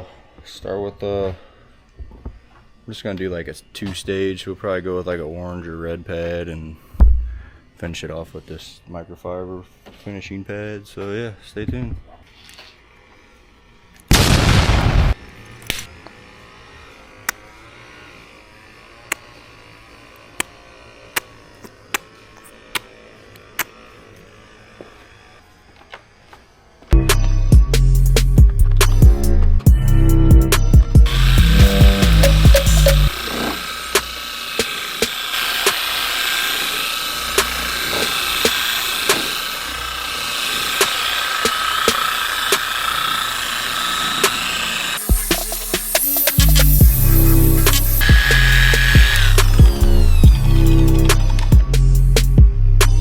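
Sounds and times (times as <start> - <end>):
electric polisher whining: 1.2 - 8.5, 12.1 - 14.1, 15.1 - 29.0, 29.8 - 52.4
sharp clicks: 45.2 - 50.3.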